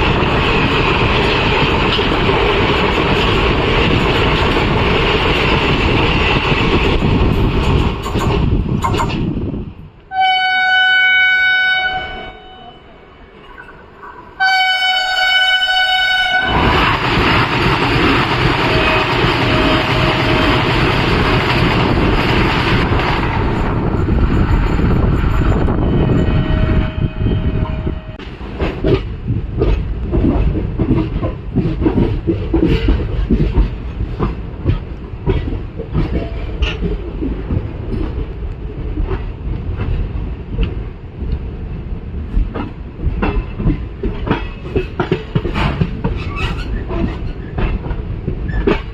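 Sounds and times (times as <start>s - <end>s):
train rushing past: 0.0s - 48.9s
train horn: 10.1s - 13.0s, 14.4s - 16.8s, 18.6s - 20.8s, 25.8s - 28.2s
wheels clacking over rail joints: 15.9s - 25.9s, 28.2s - 48.9s.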